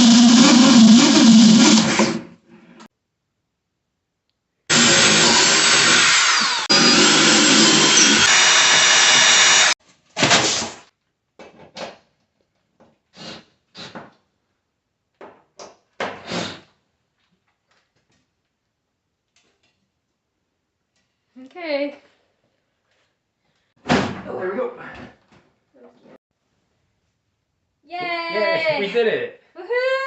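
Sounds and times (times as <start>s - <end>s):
power drill running: 0.0s - 2.2s, 4.7s - 9.8s.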